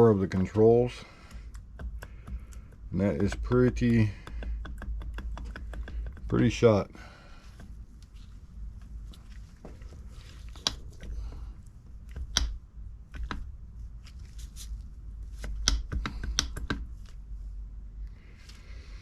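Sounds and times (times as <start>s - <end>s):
steady low hum: 0.0s - 19.0s
metal parts clicking and knocking: 0.4s - 6.7s.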